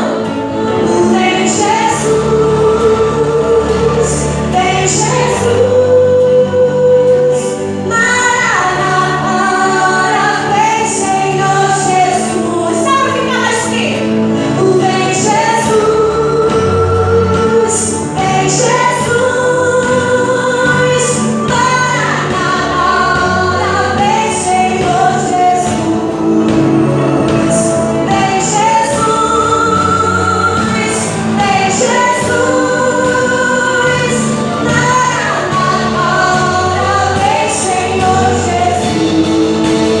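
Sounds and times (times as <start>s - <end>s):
backing vocals: 0.0s - 40.0s
live band playing: 0.0s - 40.0s
woman singing lead vocal: 0.0s - 40.0s.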